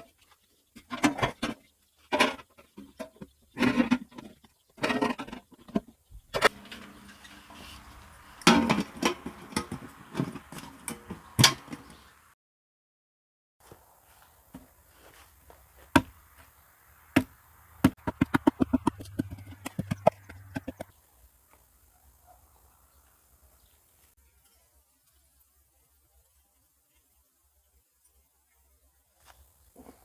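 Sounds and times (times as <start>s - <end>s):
knocks and clatters: 17.9s - 20.9s.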